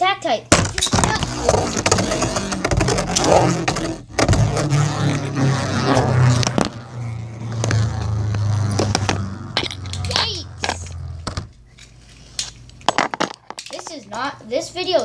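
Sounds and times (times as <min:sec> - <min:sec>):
spinning tops whirring: 0:00.8 - 0:11.9.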